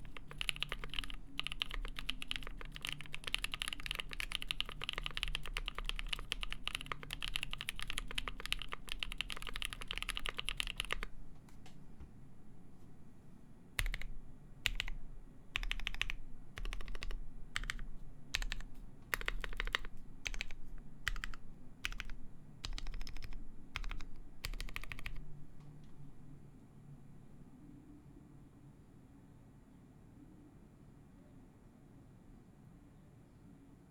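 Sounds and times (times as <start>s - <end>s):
mechanical keyboard typing: 0.0s - 11.1s, 13.8s - 15.0s, 15.6s - 25.2s.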